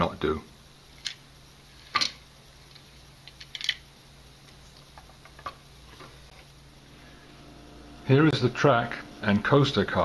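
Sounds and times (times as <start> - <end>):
plastic pieces clicking: 1.9 - 3.8.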